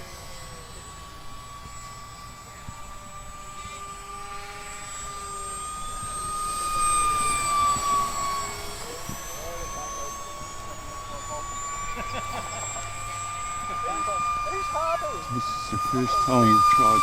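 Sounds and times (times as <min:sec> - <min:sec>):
model jet fan whining: 0:00.0 - 0:17.0.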